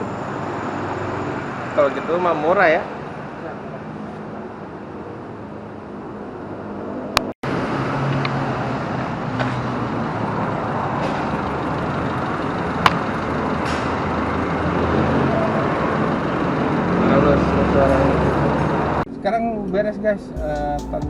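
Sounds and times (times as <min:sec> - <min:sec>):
vehicle engine running: 0:07.5 - 0:19.0.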